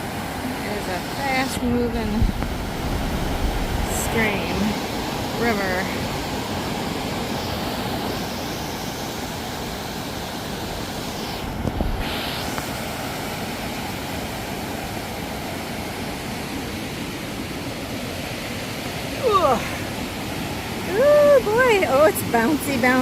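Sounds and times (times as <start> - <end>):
fast-moving river rushing: 0.0 - 23.0
low rumble: 1.6 - 5.2.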